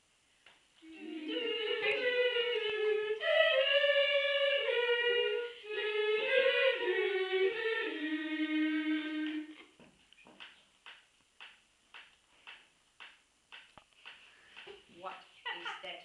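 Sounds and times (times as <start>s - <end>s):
person singing slow melody: 0.8s - 9.6s.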